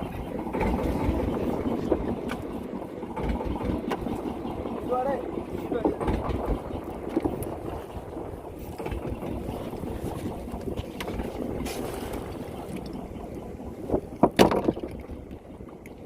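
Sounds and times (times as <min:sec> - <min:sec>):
wind and water rushing: 0:00.0 - 0:16.0
knocks on boat: 0:13.9 - 0:15.0.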